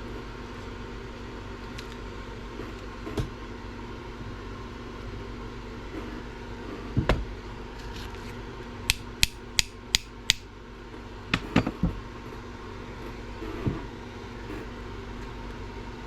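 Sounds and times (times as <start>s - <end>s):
steady fan-like hum: 0.0s - 16.0s
sharp taps of hard objects: 8.9s - 10.4s.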